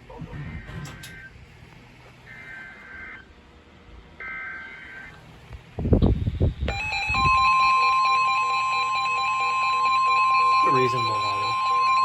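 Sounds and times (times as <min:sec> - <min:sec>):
radio alert alarms: 0:02.3 - 0:03.3, 0:04.2 - 0:05.2, 0:06.7 - 0:12.0
steady warning alarm tone: 0:02.3 - 0:03.3, 0:06.7 - 0:12.0.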